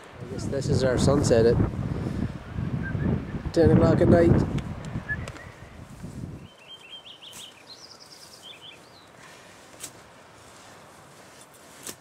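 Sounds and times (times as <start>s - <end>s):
songbird chirping: 6.4s - 9.4s.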